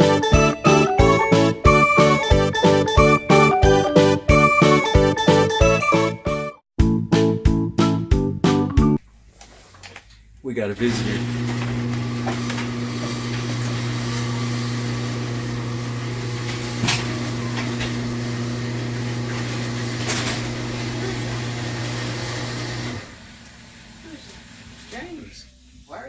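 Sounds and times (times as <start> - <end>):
electric motor humming: 10.8 - 26.0.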